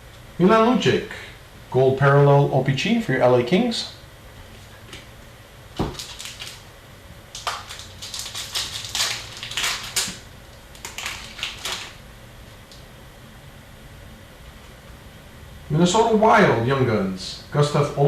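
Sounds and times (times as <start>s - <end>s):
card pack wrappers crinkling: 5.8s - 6.7s, 7.3s - 12.0s.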